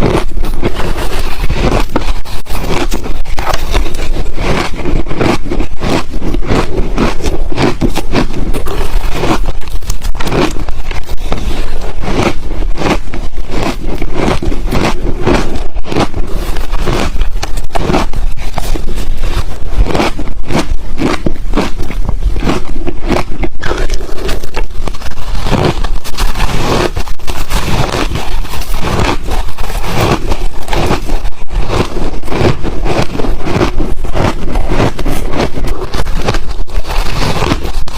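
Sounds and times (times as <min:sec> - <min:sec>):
ice being chewed: 0:00.0 - 0:37.9.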